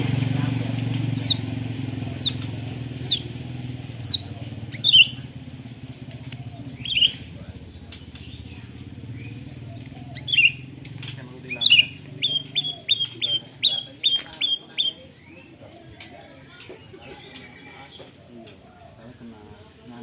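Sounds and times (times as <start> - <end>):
bird chirps: 0.0 - 20.0
engine hum: 0.0 - 20.0
bird whistling calls: 1.1 - 5.4, 6.3 - 15.7.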